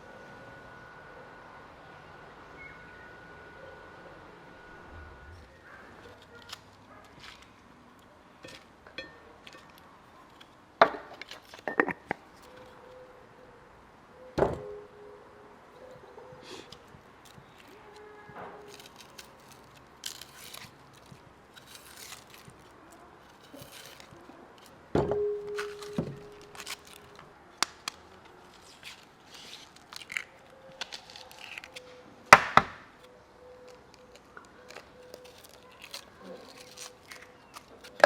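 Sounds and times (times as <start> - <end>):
loud ringing knock: 25.0 - 26.3.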